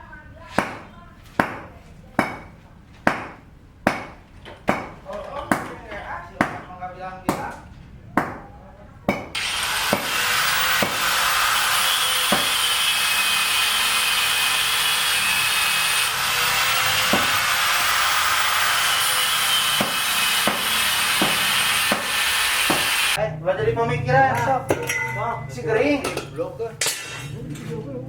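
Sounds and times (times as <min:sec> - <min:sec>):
power tool cutting hiss: 0:09.4 - 0:23.2.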